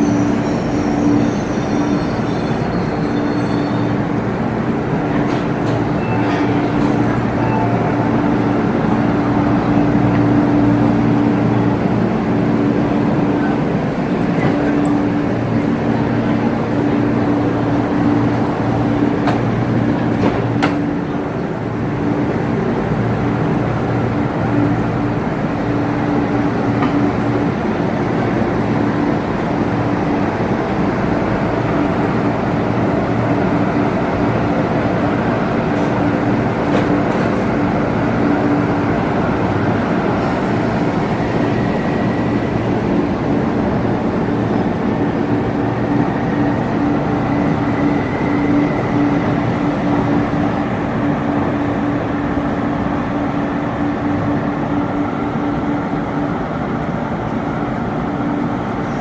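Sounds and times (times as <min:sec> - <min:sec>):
electric train humming: 0:00.0 - 0:59.0.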